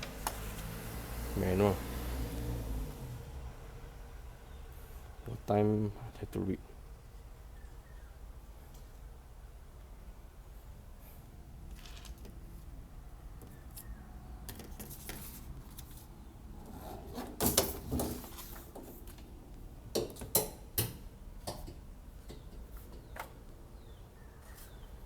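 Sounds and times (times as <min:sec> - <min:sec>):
handling knocks and clatters: 0:17.0 - 0:19.3.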